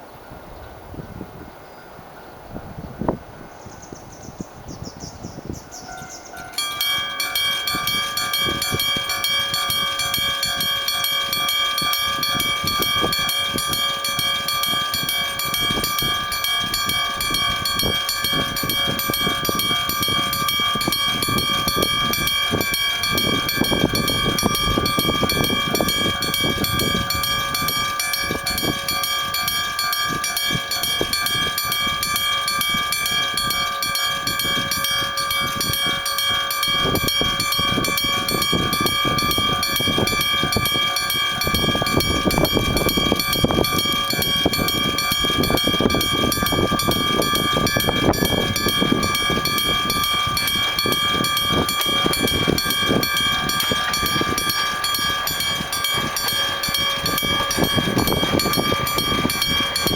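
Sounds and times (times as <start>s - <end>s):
level crossing bell ringing: 5.9s - 59.9s.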